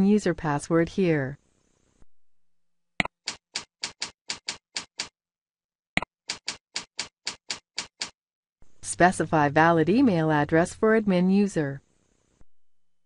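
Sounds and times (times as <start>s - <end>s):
keyboard keystrokes: 3.0s - 5.1s, 6.3s - 8.2s.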